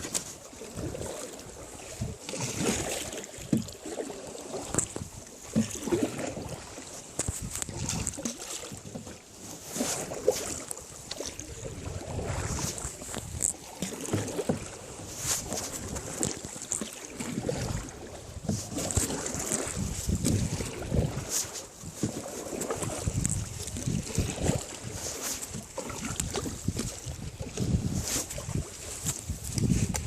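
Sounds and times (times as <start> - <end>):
water sloshing: 0.0 - 30.0
wind on microphone: 1.8 - 3.1, 7.2 - 8.3, 10.0 - 13.8, 14.4 - 30.0
small knocks and low thumps: 18.4 - 21.1.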